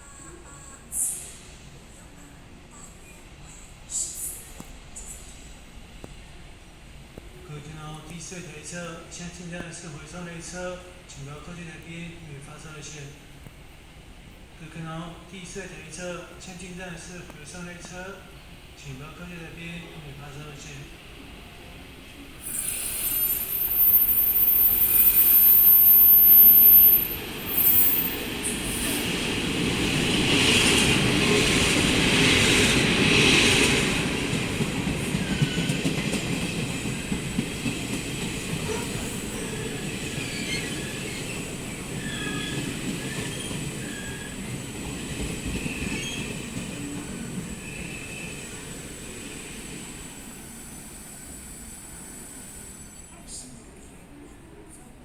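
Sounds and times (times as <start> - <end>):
carriages rumbling over rails: 13.9 - 53.0
electric locomotives passing: 13.9 - 54.8
train wheel squeals: 22.4 - 29.3, 35.0 - 53.5.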